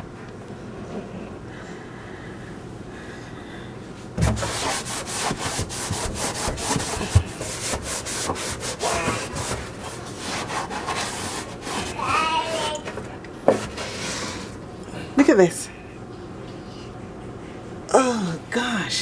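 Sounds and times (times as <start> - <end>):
hand scrubbing metal range hood: 4.2 - 14.7.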